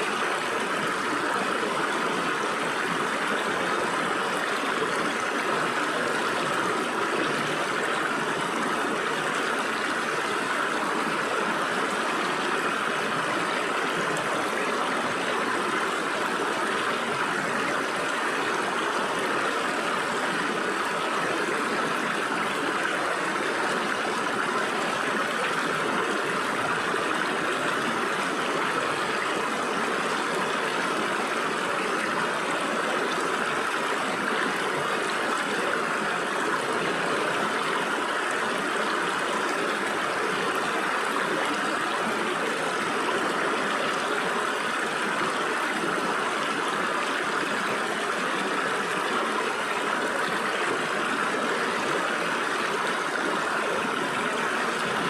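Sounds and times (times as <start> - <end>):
stream splashing over rocks: 0.0 - 55.0.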